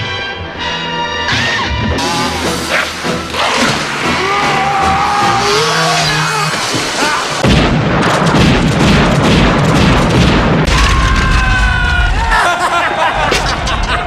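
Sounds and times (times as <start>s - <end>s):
film music with gliding tones: 0.0s - 7.4s
loud booms with low rumble: 7.4s - 12.2s.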